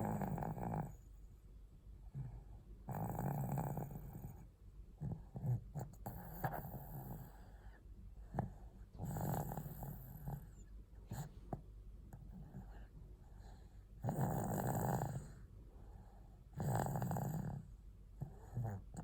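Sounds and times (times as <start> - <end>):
loud snoring: 0.0 - 1.0, 2.2 - 4.4, 5.0 - 7.4, 8.3 - 11.3, 14.0 - 15.4, 16.5 - 19.0
quiet breaths: 0.0 - 19.0.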